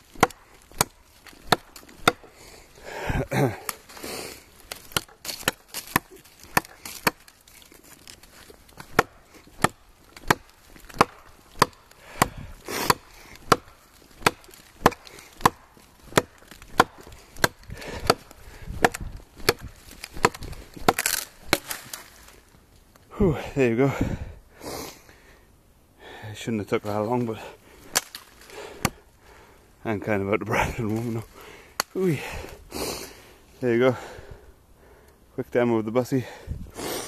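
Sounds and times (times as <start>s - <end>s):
knife chopping wood: 0.0s - 2.4s, 4.6s - 7.4s, 8.0s - 22.2s, 27.9s - 29.0s
heavy breathing: 2.0s - 4.8s, 11.9s - 13.7s, 17.0s - 19.1s, 23.1s - 26.4s, 27.3s - 29.8s, 30.5s - 35.3s, 36.2s - 37.0s.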